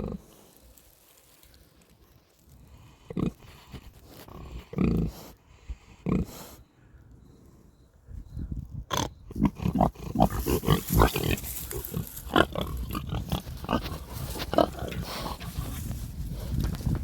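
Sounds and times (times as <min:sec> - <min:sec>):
pigs grunting: 0:00.0 - 0:00.4, 0:03.0 - 0:06.6, 0:08.9 - 0:15.9.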